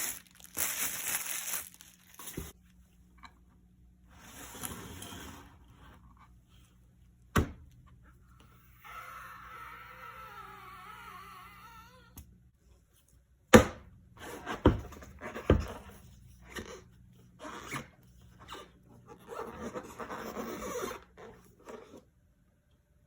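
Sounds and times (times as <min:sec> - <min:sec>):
packaging rustling: 0:00.0 - 0:02.6.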